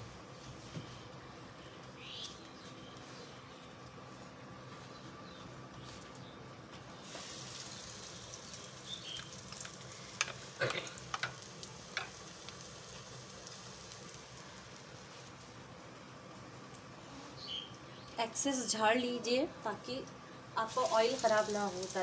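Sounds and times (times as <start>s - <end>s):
cutlets sizzling in hot oil: 6.9s - 15.7s, 20.6s - 22.0s.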